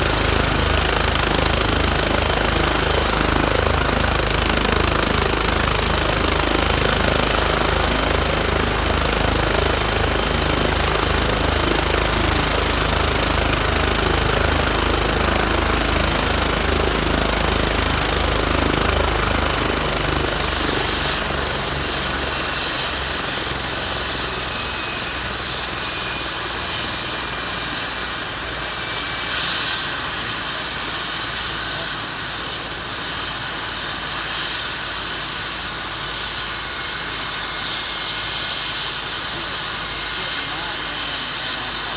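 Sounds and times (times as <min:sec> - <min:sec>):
helicopter rotor thumping: 0:00.0 - 0:27.9
turbine whine: 0:00.0 - 0:41.9.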